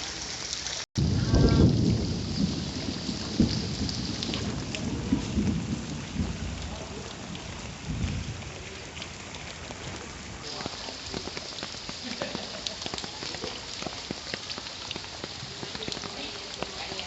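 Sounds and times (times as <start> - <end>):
steady rain falling: 0.0 - 17.0
low rumble of thunder: 1.0 - 10.4.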